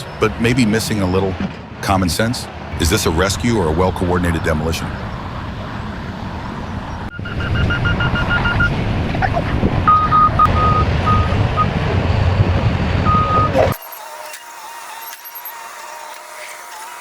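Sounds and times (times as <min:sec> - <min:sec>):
heavy machinery diesel rumble: 0:00.0 - 0:13.8
electronic warning beeps: 0:06.9 - 0:11.8, 0:13.0 - 0:15.7.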